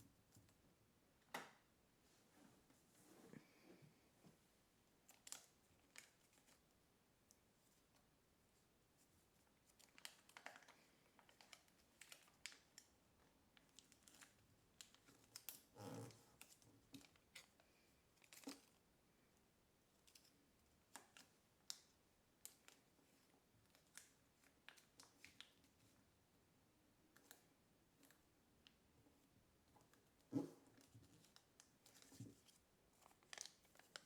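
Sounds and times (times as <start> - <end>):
paper being folded and creased: 30.3 - 34.0.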